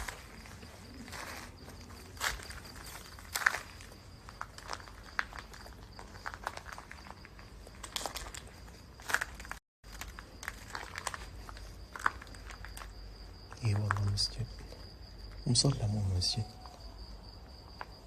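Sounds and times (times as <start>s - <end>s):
footsteps crunching on gritty ground: 0.0s - 14.2s
faint high-pitched tone: 15.5s - 17.2s.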